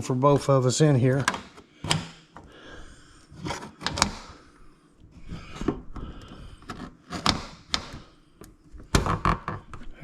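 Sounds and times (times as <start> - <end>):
plastic tool scraping: 3.3 - 4.4, 5.3 - 8.2
sharp plastic clicks and knocks: 6.7 - 8.1.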